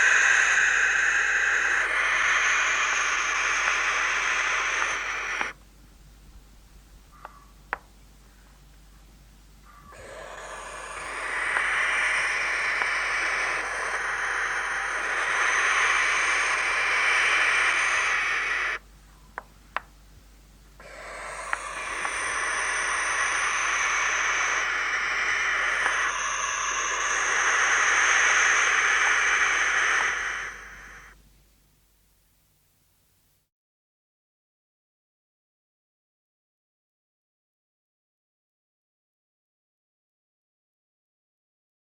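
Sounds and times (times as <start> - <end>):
faint clicks: 0.0 - 5.6, 10.8 - 20.0, 20.7 - 31.2
owl rasping calls: 0.0 - 5.6, 7.1 - 8.6, 9.6 - 19.5, 20.8 - 31.2.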